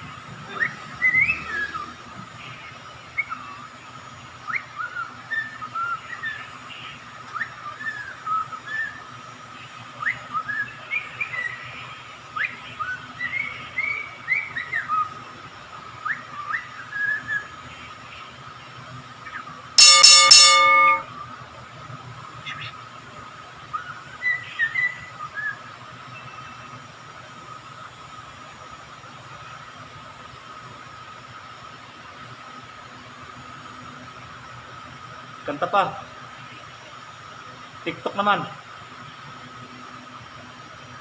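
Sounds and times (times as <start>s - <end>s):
loud multi-tone blare: 19.8s - 21.1s
steady high tone: 19.8s - 21.1s.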